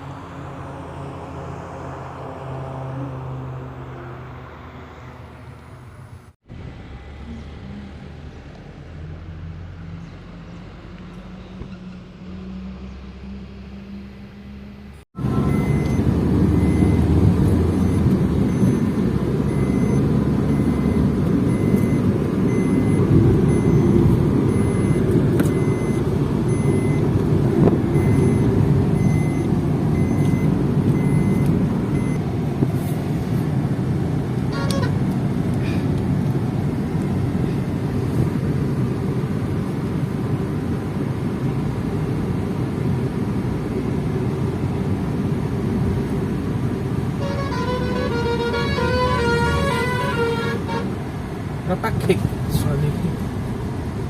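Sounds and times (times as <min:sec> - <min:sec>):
car engine and tyre rumble: 0:00.0 - 0:54.0
faint electronic beep: 0:15.3 - 0:16.0.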